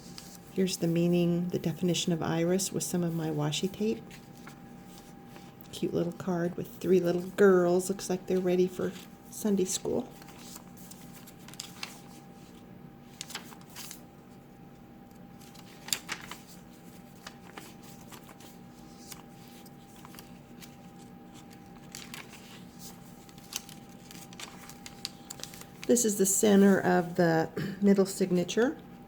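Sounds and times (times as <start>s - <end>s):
paper pages rustling: 0.0s - 0.9s, 2.9s - 27.2s
faint steady hum: 0.0s - 29.0s
paper crinkles and taps: 10.1s - 12.2s, 13.1s - 14.1s, 15.1s - 25.9s.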